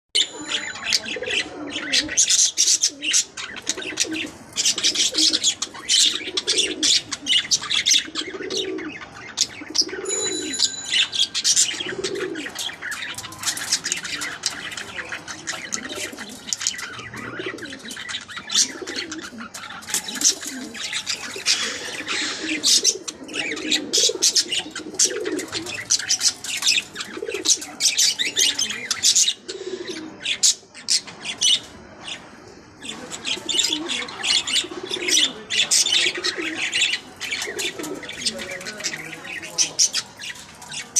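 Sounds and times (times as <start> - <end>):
birds chirping: 0.1 - 40.9.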